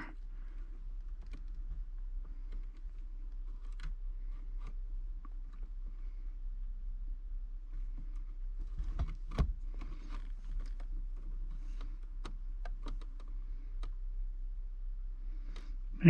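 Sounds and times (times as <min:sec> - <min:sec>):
low steady hum: 0:00.0 - 0:16.0
handling wires and plastic: 0:08.0 - 0:13.3.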